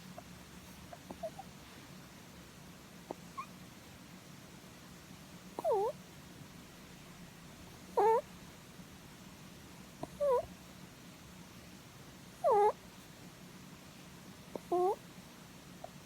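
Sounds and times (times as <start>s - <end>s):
rabbit calls: 0.0s - 1.6s, 3.0s - 3.6s, 5.5s - 6.0s, 7.9s - 8.3s, 10.0s - 10.5s, 12.4s - 12.8s, 14.5s - 15.0s.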